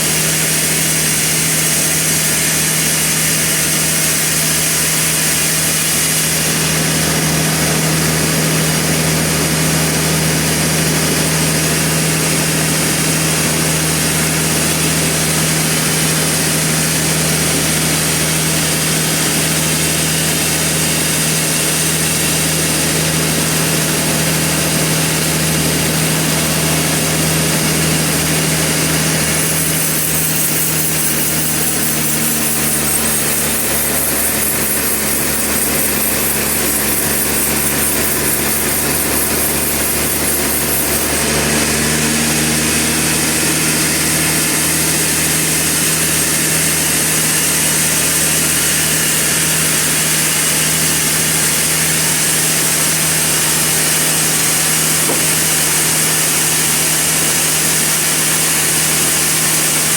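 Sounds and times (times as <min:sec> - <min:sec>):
saw cutting log: 0:00.0 - 0:59.9
sawmill machinery hum: 0:00.0 - 0:59.9.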